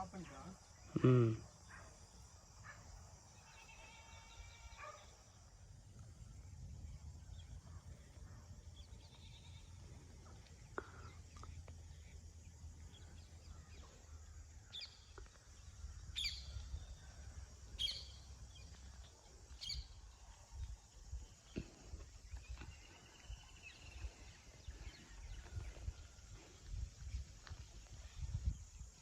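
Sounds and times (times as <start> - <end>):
bird chirps: 16.1 - 16.7, 17.8 - 18.8, 19.5 - 20.0.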